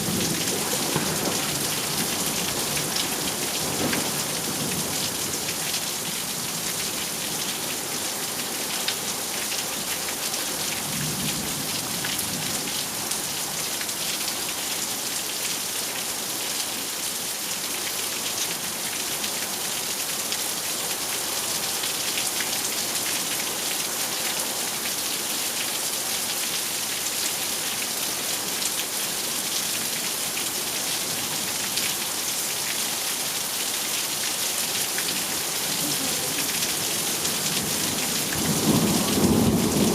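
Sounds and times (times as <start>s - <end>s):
distant thunder rumble: 0.0s - 4.6s
heavy rain hissing: 0.0s - 9.3s, 26.8s - 39.9s
raindrops ticking on surfaces: 0.0s - 39.9s.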